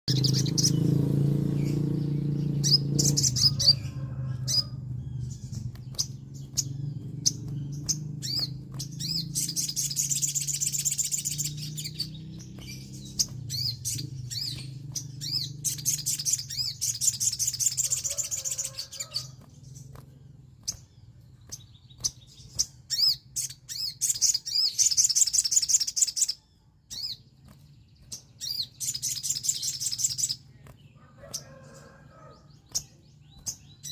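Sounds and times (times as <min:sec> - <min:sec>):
low hum: 0:00.1 - 0:17.8
bird high rattling trills: 0:00.1 - 0:33.9
bird sharp clicks: 0:05.6 - 0:11.3.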